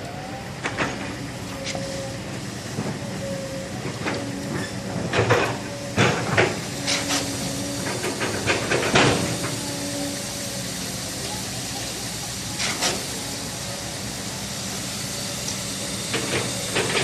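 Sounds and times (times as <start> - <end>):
construction knocks and clanks: 3.8 - 9.6, 16.1 - 17.0.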